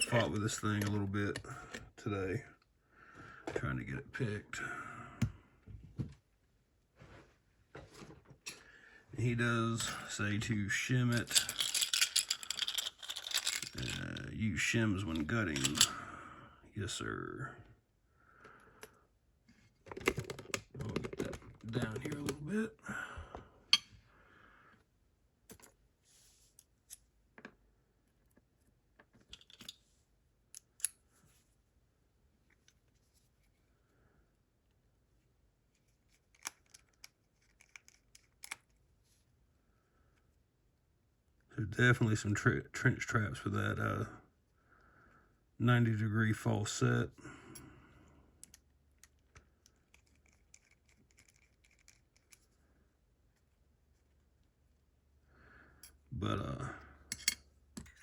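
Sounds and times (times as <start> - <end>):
lock-picking tools clicking: 11.2 - 14.0.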